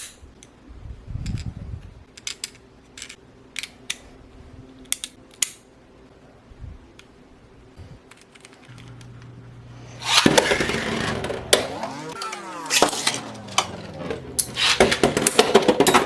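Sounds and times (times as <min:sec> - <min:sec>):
plastic parts clicking: 0:02.1 - 0:04.0
spinning tops whirring and scraping: 0:09.8 - 0:15.9
spinning tops clashing: 0:10.0 - 0:15.6.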